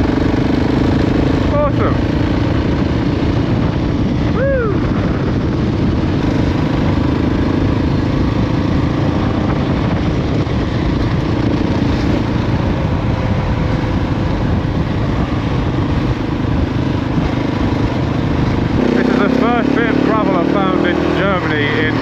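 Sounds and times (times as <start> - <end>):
motorcycle engine running: 0.0 - 22.0
wind noise: 0.0 - 22.0.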